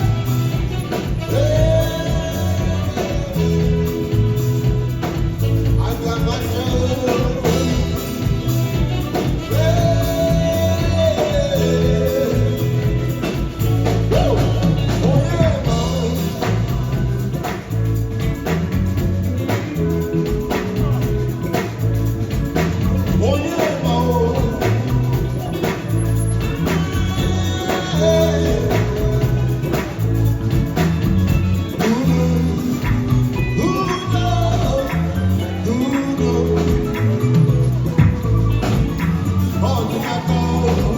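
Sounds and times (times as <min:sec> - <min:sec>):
person singing: 0:00.0 - 0:17.7, 0:23.1 - 0:37.6, 0:38.6 - 0:40.9
live band playing: 0:00.0 - 0:40.9.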